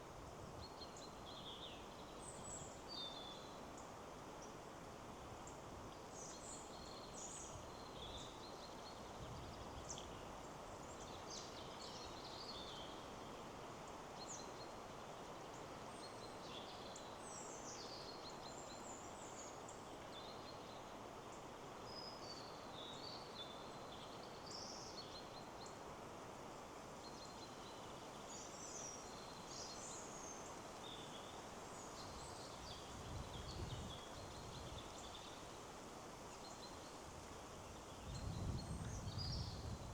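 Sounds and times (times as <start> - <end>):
wind in trees: 0.0 - 39.9
songbirds chirping: 5.4 - 39.9.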